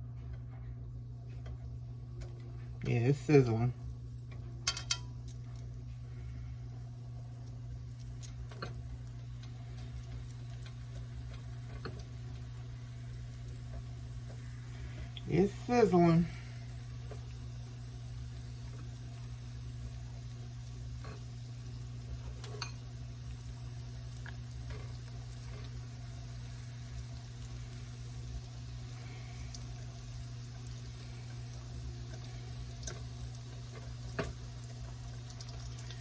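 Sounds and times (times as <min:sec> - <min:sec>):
steady low hum: 0:00.0 - 0:36.0
mushrooms sizzling in grease: 0:02.8 - 0:36.0.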